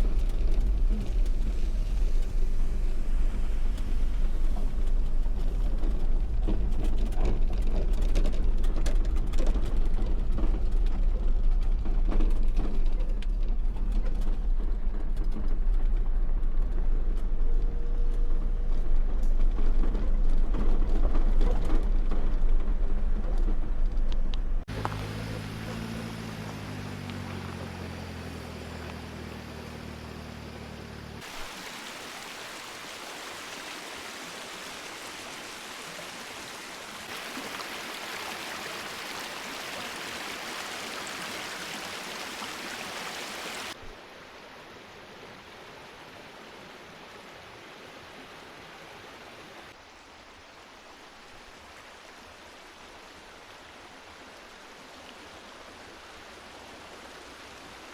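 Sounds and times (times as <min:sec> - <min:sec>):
river water rushing: 0:24.7 - 0:57.9.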